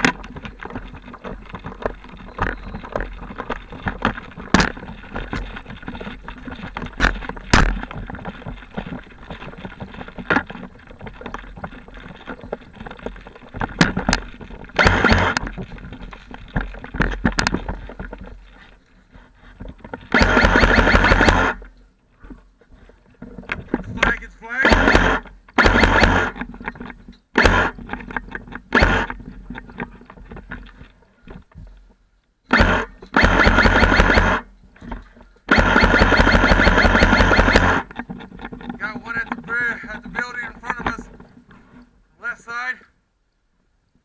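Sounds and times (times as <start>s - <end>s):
rapid clicking bursts: 0.0s - 15.7s, 20.1s - 21.7s, 24.0s - 26.4s, 27.4s - 29.2s, 32.5s - 34.5s, 35.5s - 41.1s
gear rattling and knocking: 0.0s - 41.9s.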